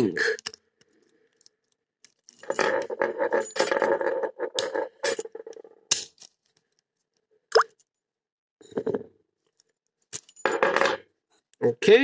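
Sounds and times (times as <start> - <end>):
padlock rattling and clicking: 0.4 - 4.0.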